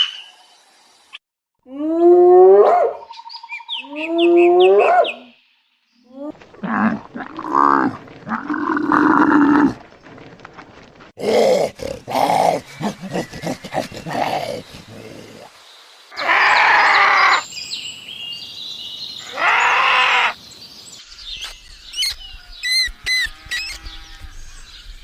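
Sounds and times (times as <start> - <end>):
animal calls and cries: 1.7 - 5.4, 11.2 - 17.5, 19.2 - 20.4, 21.4 - 25.0.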